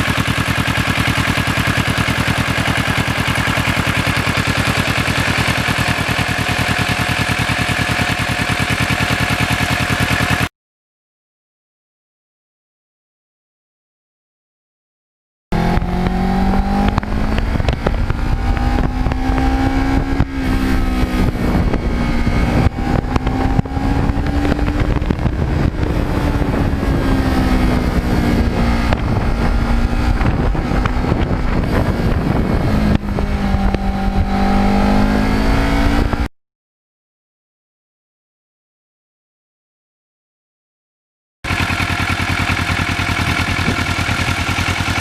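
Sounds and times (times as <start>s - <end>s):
motorcycle engine running: 0.0s - 10.5s, 15.5s - 36.3s, 41.4s - 45.0s
wind noise: 15.6s - 36.3s.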